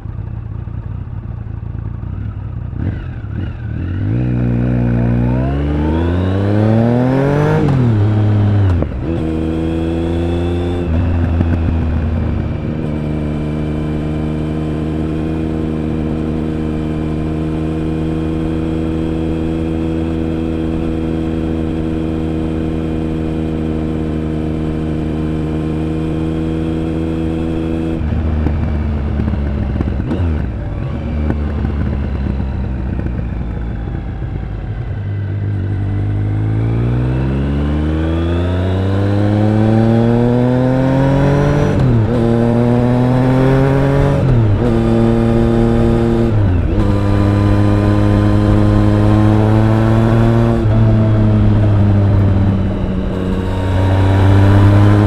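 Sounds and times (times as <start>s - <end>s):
motorcycle engine accelerating: 0.0s - 55.0s.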